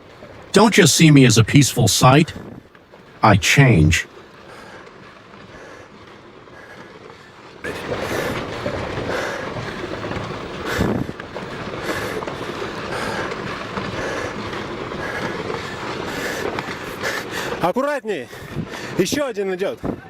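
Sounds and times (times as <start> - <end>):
rumbling clatter of tumbling rocks: 4.1 - 17.6.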